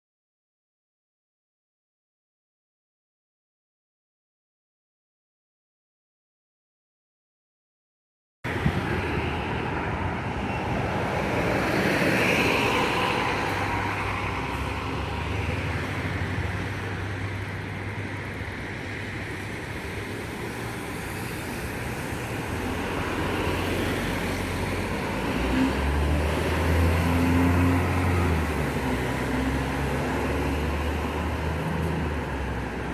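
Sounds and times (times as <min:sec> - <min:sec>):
bus engine drone: 0:08.5 - 0:32.9
road traffic noise: 0:08.5 - 0:32.9.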